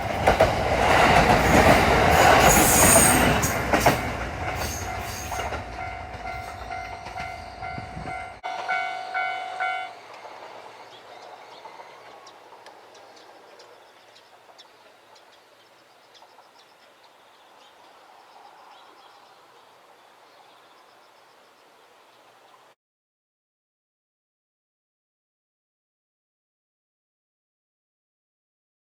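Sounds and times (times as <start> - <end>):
diesel railcar rumble: 0.0 - 15.4
crossing warning bell ringing: 1.5 - 13.0
faint ticks: 12.2 - 15.3.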